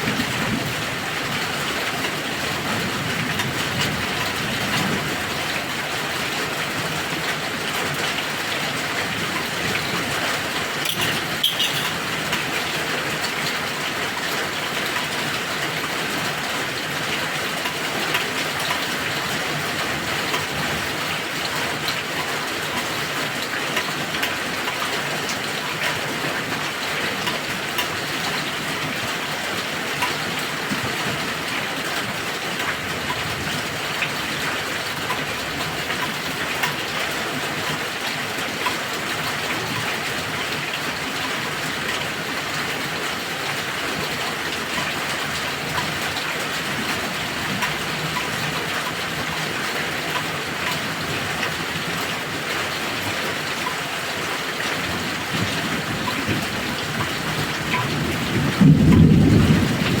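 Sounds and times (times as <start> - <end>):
heavy rain falling: 0.0 - 60.0
water drips: 10.8 - 12.5
low rumble of thunder: 55.2 - 60.0.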